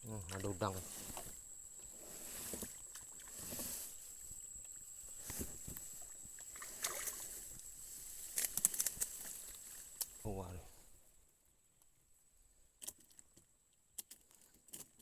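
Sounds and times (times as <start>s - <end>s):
handling knocks and rustles: 5.1s - 6.3s.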